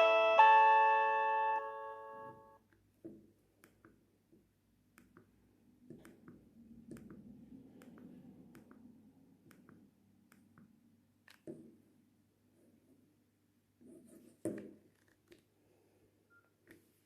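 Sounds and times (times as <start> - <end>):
phone ringtone: 0.0 - 2.6.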